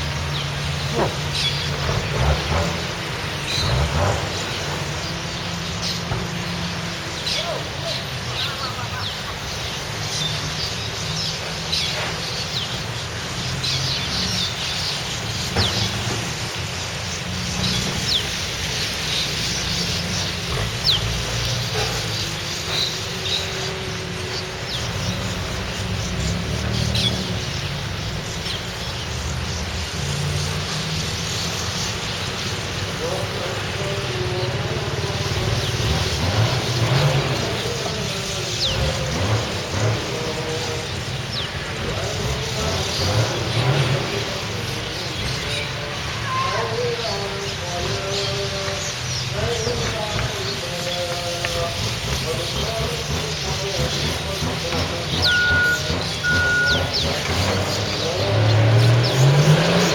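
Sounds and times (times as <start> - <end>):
faint voices: 0.0 - 12.6, 31.5 - 59.9
small birds chirping: 0.0 - 59.9
vehicle engine hum: 0.0 - 59.9.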